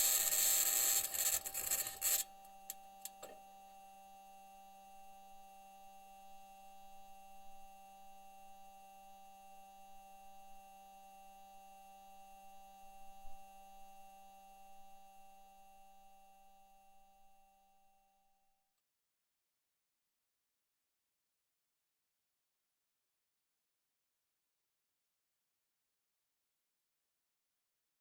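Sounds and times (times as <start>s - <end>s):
faint electrical hum: 0.0s - 17.2s.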